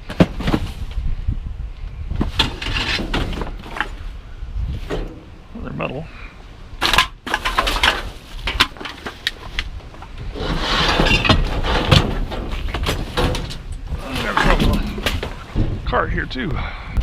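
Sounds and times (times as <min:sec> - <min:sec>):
low wind rumble on microphone: 0:00.0 - 0:17.0
metal scrap clanking and rattling: 0:02.2 - 0:04.0, 0:04.8 - 0:05.5, 0:06.8 - 0:09.6, 0:10.2 - 0:15.8
metal scraping rustle: 0:02.2 - 0:05.5, 0:06.8 - 0:15.9.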